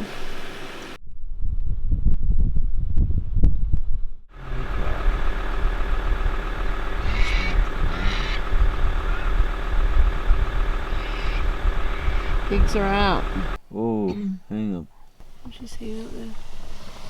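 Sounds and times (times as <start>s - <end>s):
vehicle engine idling: 4.3s - 13.6s
brief hiss: 16.4s - 17.0s.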